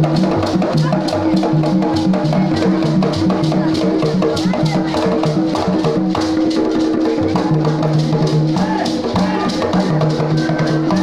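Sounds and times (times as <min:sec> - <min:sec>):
drums beating fast rhythm: 0:00.0 - 0:11.0
voices singing: 0:00.6 - 0:05.4, 0:07.0 - 0:11.0.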